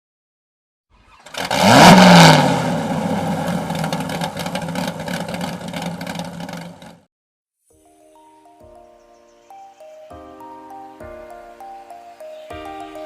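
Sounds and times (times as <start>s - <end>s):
car engine revving: 1.0s - 7.0s.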